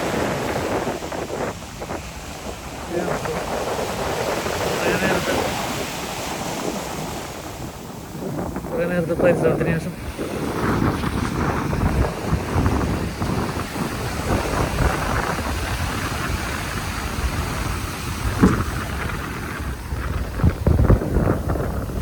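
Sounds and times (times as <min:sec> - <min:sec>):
surf washing on beach: 0:00.0 - 0:22.0
wind buffeting microphone: 0:00.0 - 0:22.0
thumps: 0:18.3 - 0:19.2.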